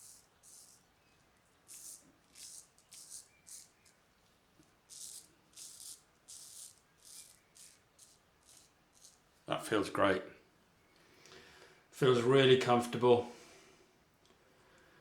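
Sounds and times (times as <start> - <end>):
razor scraping stubble: 0.0 - 0.9, 1.6 - 4.0, 4.9 - 9.2.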